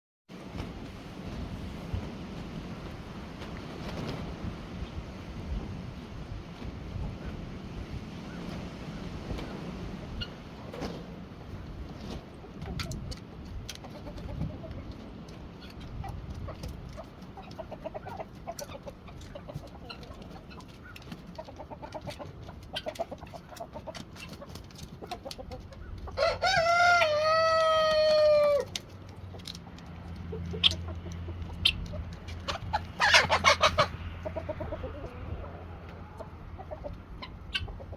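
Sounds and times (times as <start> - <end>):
wind rumbling on microphone: 0.4 - 17.2
chickens clucking softly: 4.8 - 37.9
rooster crowing: 26.2 - 28.7.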